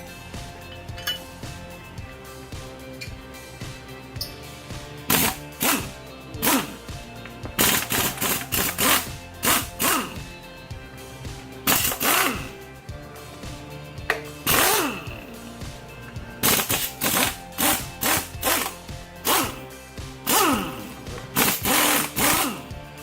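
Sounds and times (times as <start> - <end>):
background music: 0.0 - 23.0
impact wrench bursts: 5.0 - 10.3, 11.6 - 12.7, 14.1 - 15.4, 16.4 - 22.9.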